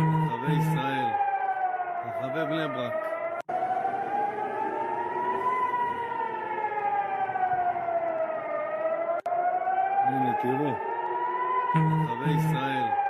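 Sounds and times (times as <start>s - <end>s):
air-raid siren wailing: 0.0s - 13.0s.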